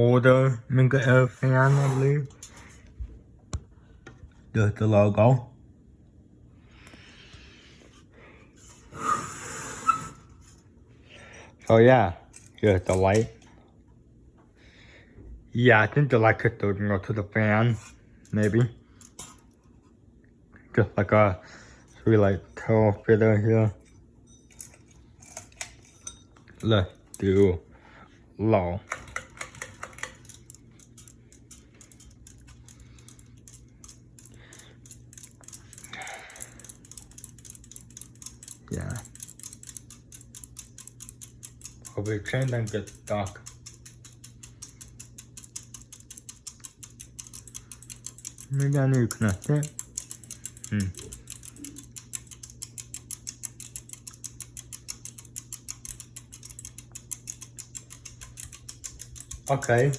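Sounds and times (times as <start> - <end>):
ceiling fan motor humming: 0.0 - 59.9
light clicks and ticks: 28.9 - 59.9.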